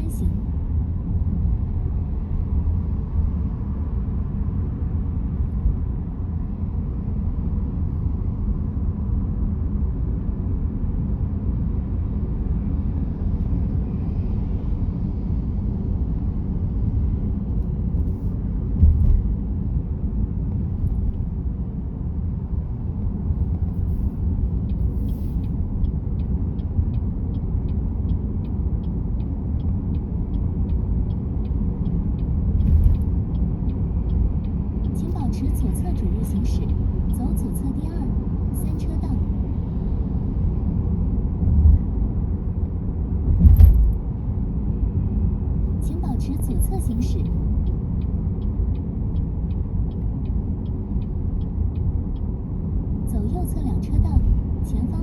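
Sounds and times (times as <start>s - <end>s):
car driving rumble: 0.0s - 55.0s
thump: 18.8s - 19.3s, 43.3s - 44.0s
light regular ticking: 23.4s - 38.3s, 45.5s - 55.0s.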